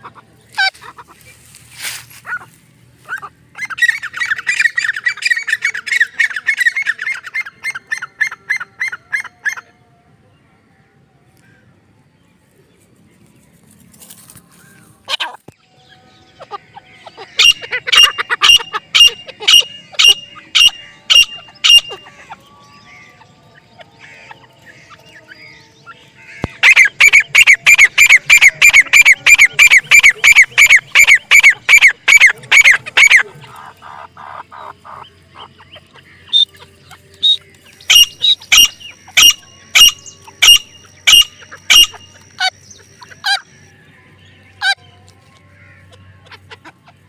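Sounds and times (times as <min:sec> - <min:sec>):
francolin shrill calls: 0:01.8 - 0:09.7, 0:14.5 - 0:43.7.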